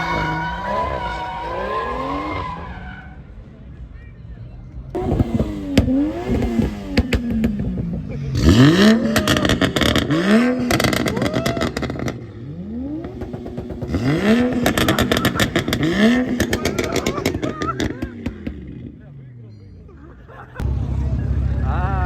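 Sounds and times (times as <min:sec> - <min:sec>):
car engine revving hard: 0:00.0 - 0:03.1, 0:04.9 - 0:19.0
exhaust crackling: 0:00.0 - 0:03.4, 0:04.8 - 0:22.0.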